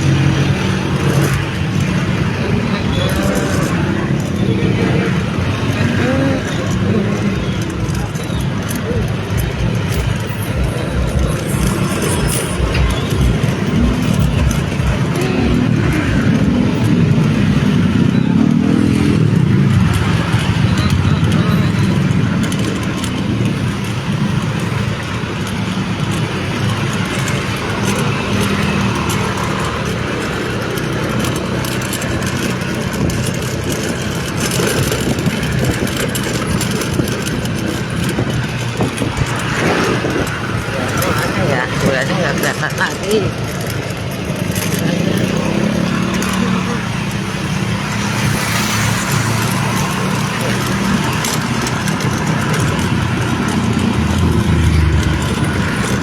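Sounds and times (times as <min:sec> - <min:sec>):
road noise: 0:00.0 - 0:56.0
vehicle engine hum: 0:00.0 - 0:56.0
wind buffeting microphone: 0:32.1 - 0:45.8.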